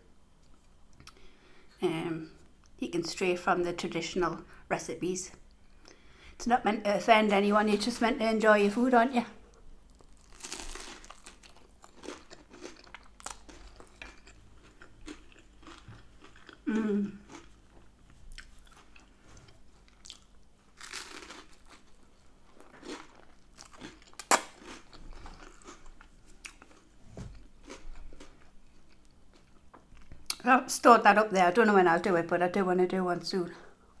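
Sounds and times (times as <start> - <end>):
person chewing crunchy food: 9.5 - 30.4
person humming: 16.7 - 17.2.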